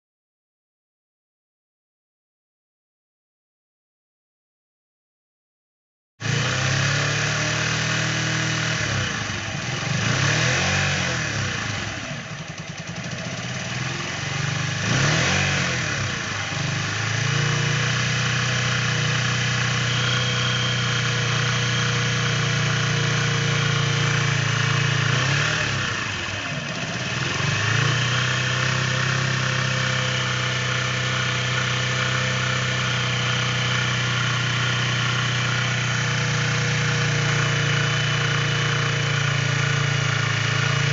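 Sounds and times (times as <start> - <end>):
motorcycle engine idling and revving: 6.2 - 40.9
engine knocking: 11.7 - 15.2, 17.9 - 40.9.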